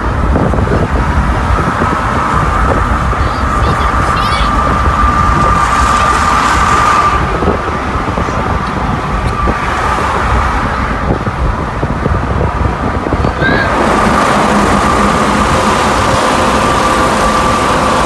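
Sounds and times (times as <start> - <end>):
car wind and road noise: 0.0 - 18.0
thin steady whistle: 2.4 - 7.4.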